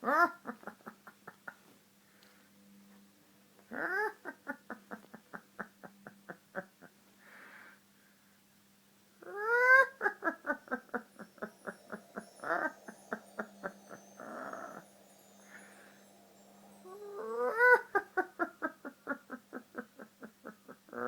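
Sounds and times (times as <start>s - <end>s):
cat cackling: 3.7s - 4.5s.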